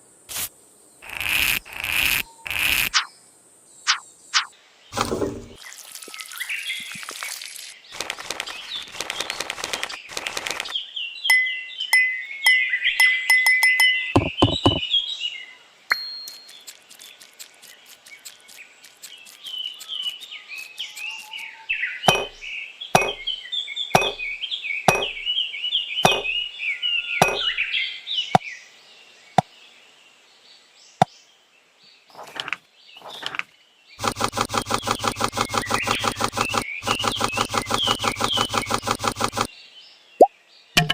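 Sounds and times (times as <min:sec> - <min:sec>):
birds chirping: 0:02.2 - 0:28.6, 0:32.1 - 0:39.6
sharp taps: 0:14.2 - 0:14.8, 0:22.1 - 0:22.4, 0:23.0 - 0:23.3, 0:24.0 - 0:24.3, 0:24.9 - 0:25.2, 0:26.0 - 0:26.4, 0:27.2 - 0:27.6
fast buzzing rattle: 0:34.0 - 0:39.5.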